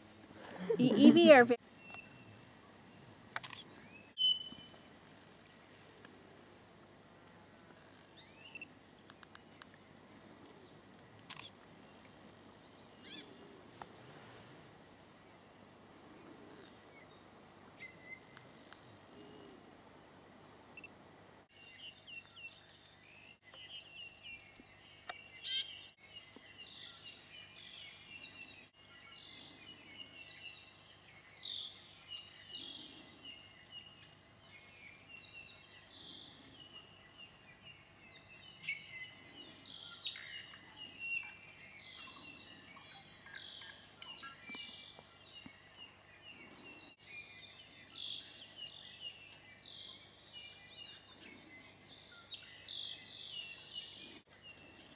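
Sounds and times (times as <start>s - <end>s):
bird chirping and whistling: 4.2s - 4.7s.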